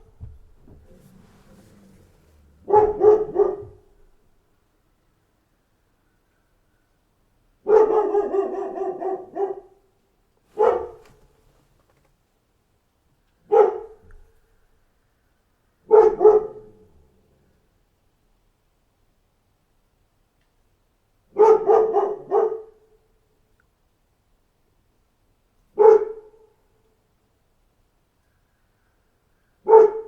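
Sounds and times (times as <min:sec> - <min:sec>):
dog barking: 0:02.6 - 0:04.0, 0:07.6 - 0:09.8, 0:10.6 - 0:11.2, 0:13.4 - 0:14.1, 0:15.8 - 0:16.9, 0:21.3 - 0:23.0, 0:25.8 - 0:26.6, 0:29.6 - 0:30.0.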